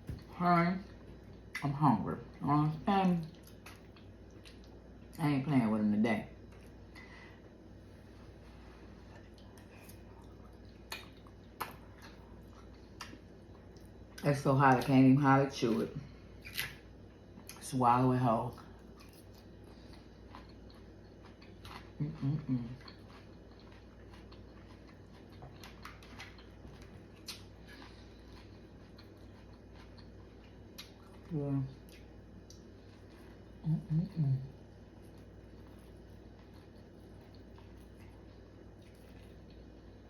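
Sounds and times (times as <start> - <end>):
low steady hum: 0.0 - 40.0
person chewing with mouth smacks: 9.0 - 14.2, 18.8 - 34.2, 35.0 - 39.8.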